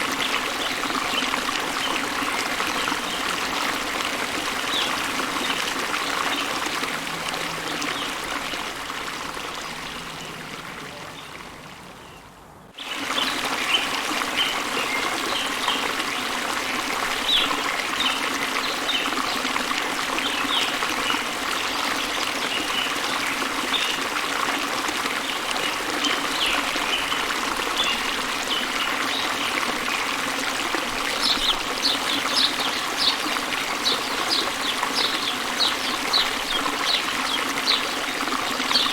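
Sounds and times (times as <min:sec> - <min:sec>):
stream trickling: 0:00.0 - 0:38.9
small birds chirping: 0:31.0 - 0:38.9.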